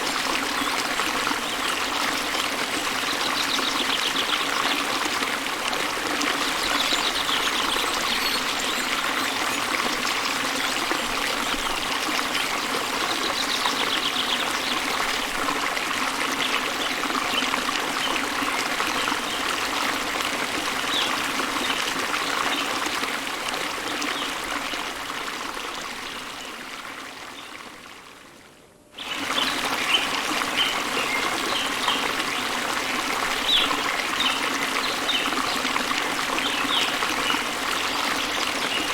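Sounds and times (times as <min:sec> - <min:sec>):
stream water running: 0:00.0 - 0:38.9.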